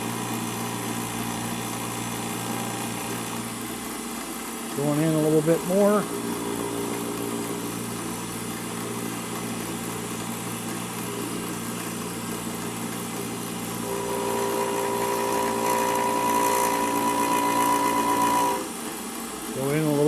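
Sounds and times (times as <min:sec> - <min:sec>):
milling machine motor hum: 0:00.0 - 0:20.0
cutter ringing tone: 0:13.8 - 0:18.7.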